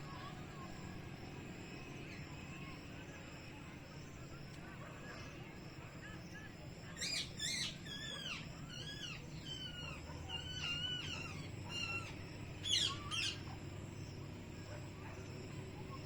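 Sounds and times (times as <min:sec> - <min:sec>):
parrots screeching: 0:07.0 - 0:13.4
parrots warbling chirps: 0:07.0 - 0:13.4.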